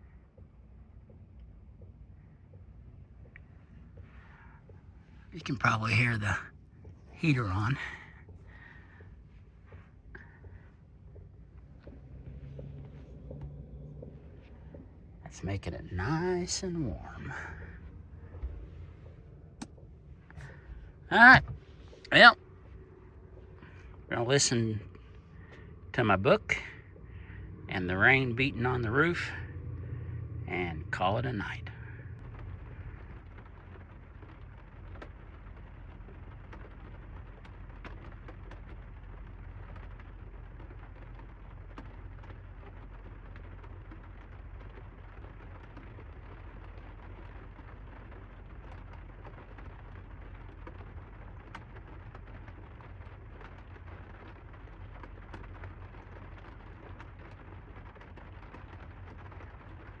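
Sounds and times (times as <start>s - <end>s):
low heater hum: 0.0s - 60.0s
rain pattering on van roof: 0.0s - 60.0s.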